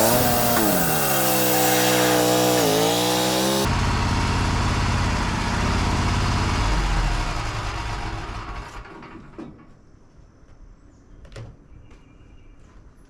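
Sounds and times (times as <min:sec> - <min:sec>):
bandsaw mill running: 0:00.0 - 0:08.8.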